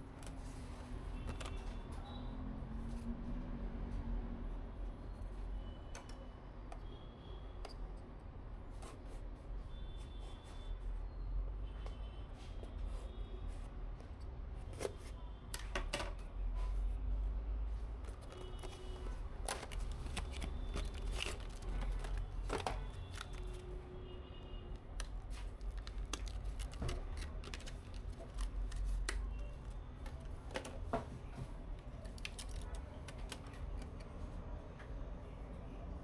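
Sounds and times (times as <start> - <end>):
clicks taps and rustles: 18.0 - 23.7, 24.7 - 34.1.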